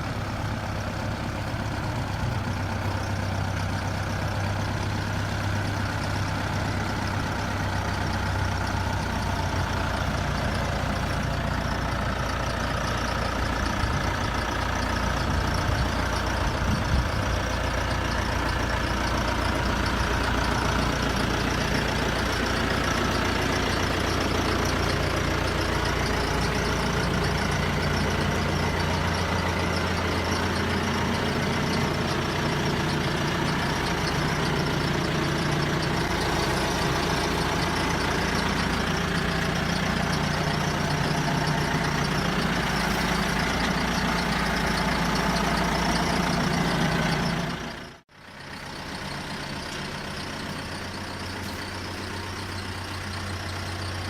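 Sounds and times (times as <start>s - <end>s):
truck engine idling: 0.0s - 54.0s.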